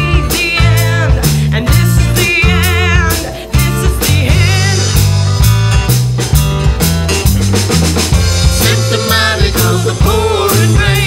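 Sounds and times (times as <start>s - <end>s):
person singing with vibrato: 0.0s - 5.1s, 8.6s - 11.0s
bass: 0.0s - 11.0s
drums: 0.0s - 11.0s
guitar: 0.0s - 11.0s.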